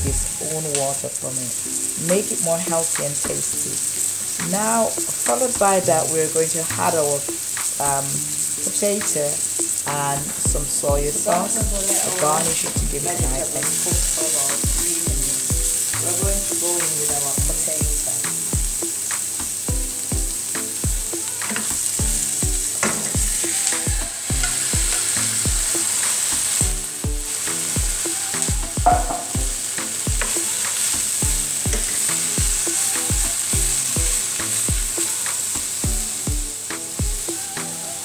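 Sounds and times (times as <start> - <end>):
vegetables sizzling in a pan: 0.0 - 38.0
background music with a beat: 3.9 - 5.7, 6.7 - 38.0
knocks against the pan: 22.8 - 23.5, 28.8 - 30.4.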